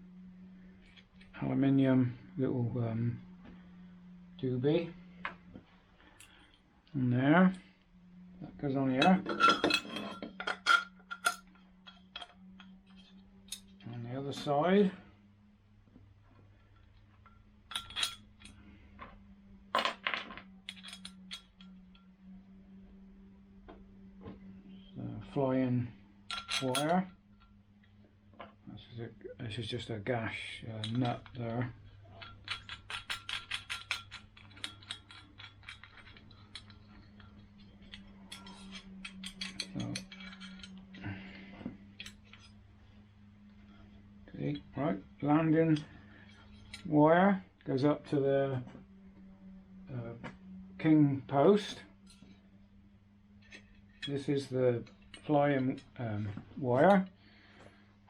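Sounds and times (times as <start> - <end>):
steady low hum: 0.0 - 58.0
metal fittings clinking: 8.9 - 13.8, 16.6 - 18.6, 20.7 - 22.0, 26.3 - 27.5, 30.8 - 41.1, 41.9 - 42.6.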